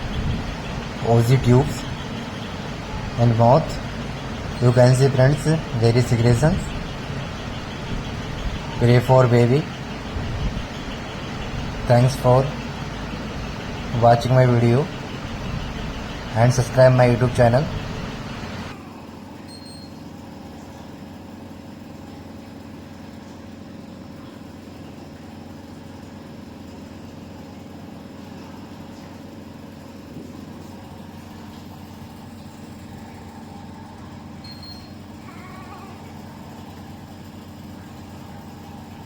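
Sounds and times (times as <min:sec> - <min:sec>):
medical equipment hum: 0:00.0 - 0:18.8.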